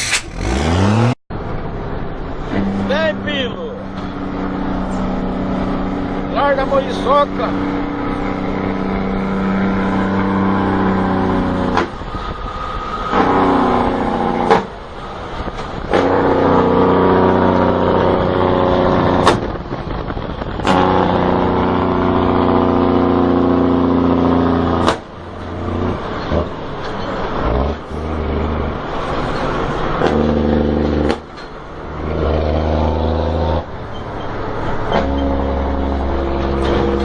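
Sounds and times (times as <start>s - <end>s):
vehicle engine running hard: 0.0s - 37.0s
sharp crack: 19.2s - 19.7s, 24.8s - 25.1s.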